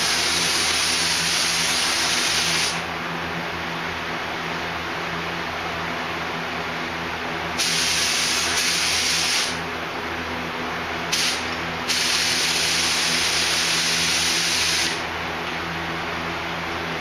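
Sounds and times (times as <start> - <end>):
paint spray gun hissing: 0.0 - 2.9, 7.6 - 9.6, 11.1 - 15.0
steady low hum: 0.0 - 17.0.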